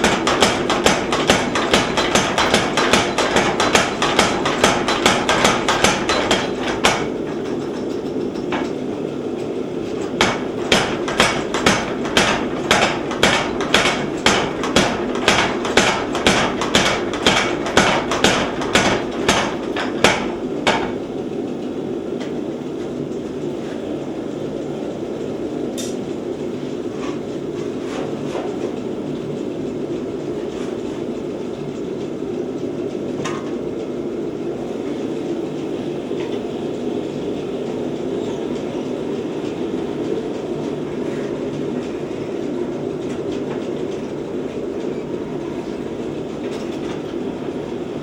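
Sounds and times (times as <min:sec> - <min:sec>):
power hammer pounding steel: 0:00.0 - 0:08.8, 0:09.9 - 0:21.1.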